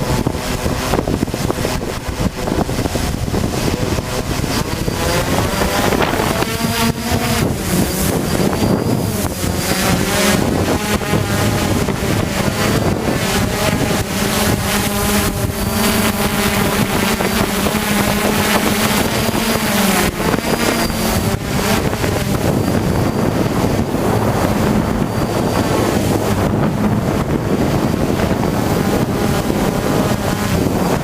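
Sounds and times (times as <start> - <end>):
drone propellers buzzing: 0.0 - 31.0
wind buffeting microphone: 0.0 - 31.0.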